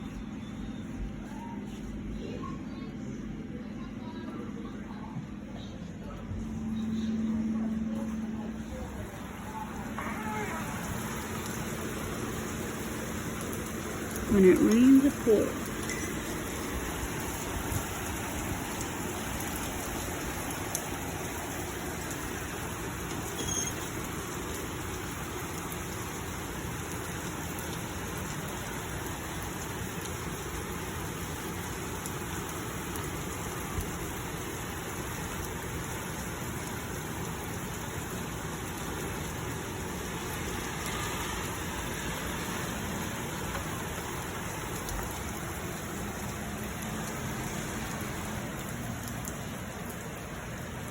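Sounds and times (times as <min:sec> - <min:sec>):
heavy rain pouring: 0:00.0 - 0:50.9.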